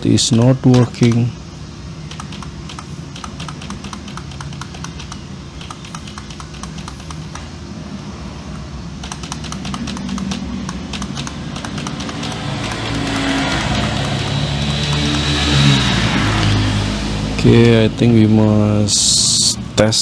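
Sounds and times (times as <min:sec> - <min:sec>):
keyboard keys clicking: 0:00.2 - 0:01.3, 0:02.1 - 0:07.5, 0:08.5 - 0:15.4.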